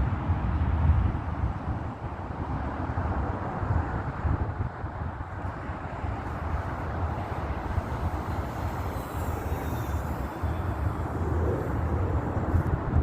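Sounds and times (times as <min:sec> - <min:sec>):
wind buffeting microphone: 0:00.0 - 0:13.0
faint high whine: 0:05.4 - 0:13.0.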